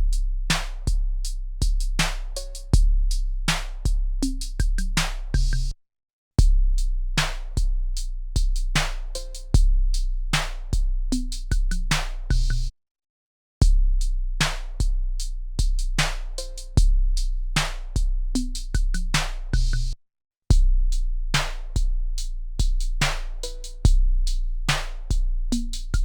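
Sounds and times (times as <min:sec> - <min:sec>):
drum machine beat: 0:00.7 - 0:03.0, 0:03.6 - 0:05.7, 0:10.5 - 0:12.7, 0:17.6 - 0:20.6, 0:22.6 - 0:24.1, 0:24.8 - 0:26.0.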